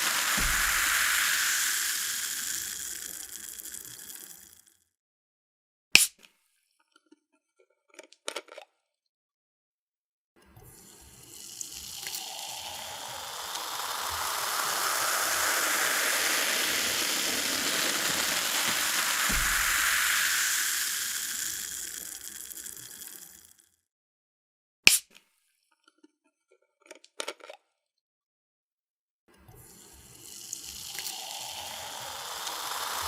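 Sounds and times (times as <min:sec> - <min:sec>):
cola fizzing as it pours: 0:00.0 - 0:04.6, 0:10.7 - 0:23.6, 0:29.7 - 0:33.0.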